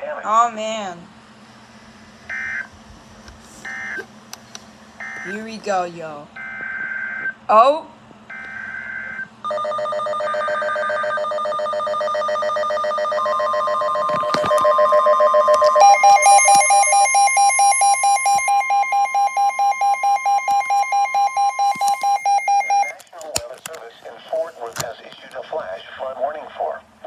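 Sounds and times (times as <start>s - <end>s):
buzzing alarm tones: 2.2s - 2.8s, 3.6s - 4.1s, 4.9s - 5.8s, 6.4s - 7.4s, 8.3s - 23.0s
steady attention tone: 13.6s - 23.2s.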